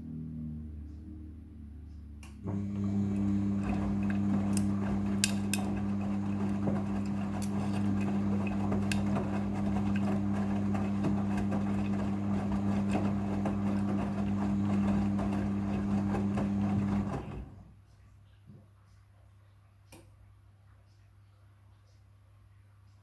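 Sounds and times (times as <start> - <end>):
washing machine motor hum: 2.2 - 17.8
washing machine churning: 2.4 - 17.7.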